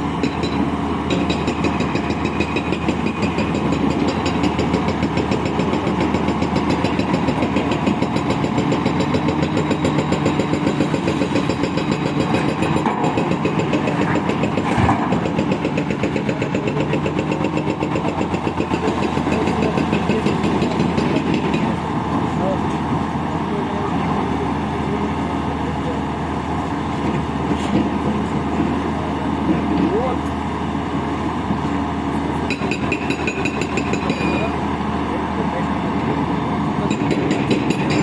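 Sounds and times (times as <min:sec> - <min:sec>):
diesel engine running: 0:00.0 - 0:38.0.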